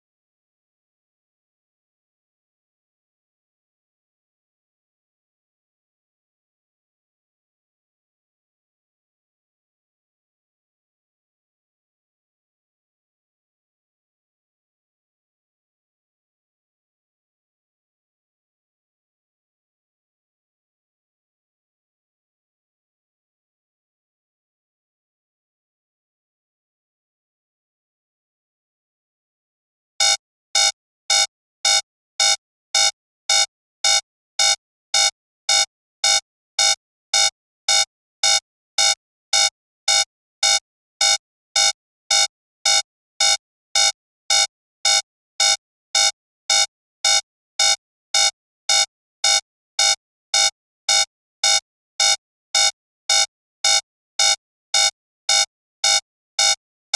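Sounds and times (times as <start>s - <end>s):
alarm clock beeping: 30.0s - 56.6s.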